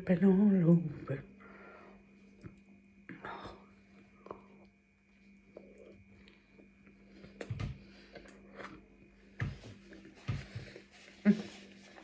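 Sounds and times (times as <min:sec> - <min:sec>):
person chewing food: 0:03.9 - 0:12.0.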